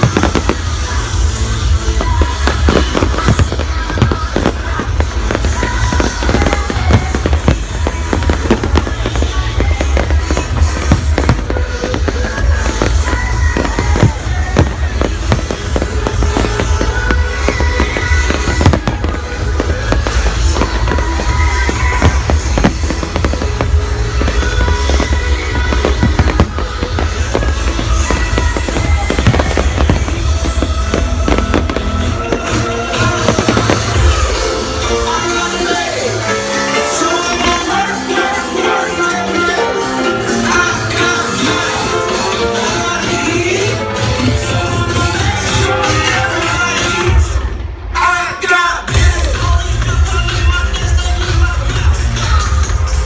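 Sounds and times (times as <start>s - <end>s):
fireworks bangs and crackling: 0.0s - 53.0s
music playing: 0.0s - 53.0s.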